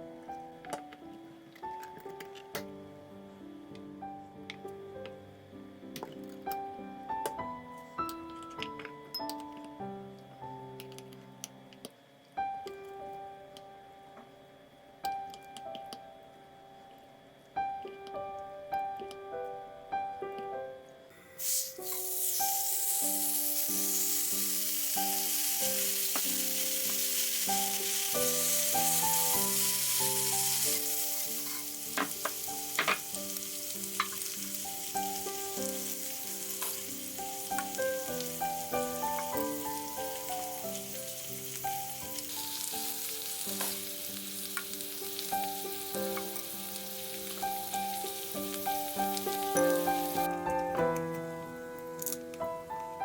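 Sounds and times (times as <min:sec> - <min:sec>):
gentle piano background music: 0:00.0 - 0:53.0
food sizzling: 0:21.4 - 0:50.5.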